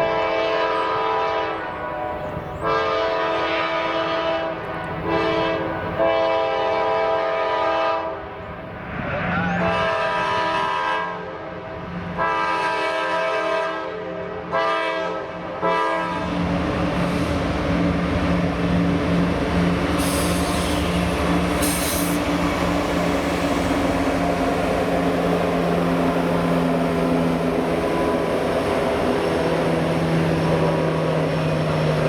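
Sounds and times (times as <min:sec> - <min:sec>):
locomotive air horn: 0:00.0 - 0:08.2, 0:09.6 - 0:11.4, 0:12.2 - 0:16.3, 0:19.9 - 0:29.0
train rumble: 0:00.0 - 0:32.0.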